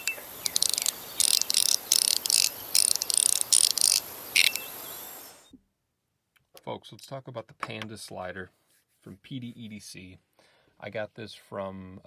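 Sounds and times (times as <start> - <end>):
fidget slider clicking: 0.0 - 4.7.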